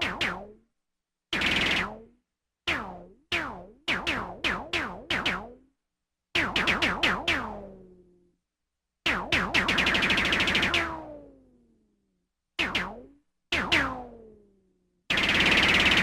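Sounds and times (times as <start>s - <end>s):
synthesized laser weapon shots: 9.1s - 11.2s, 15.1s - 16.0s.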